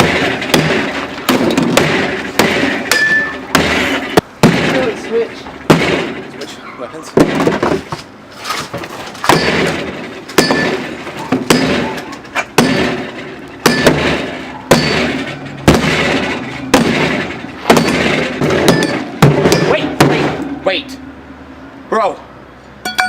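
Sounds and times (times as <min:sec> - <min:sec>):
refrigerator being struck: 0:00.0 - 0:05.0, 0:09.2 - 0:12.0, 0:12.6 - 0:20.5.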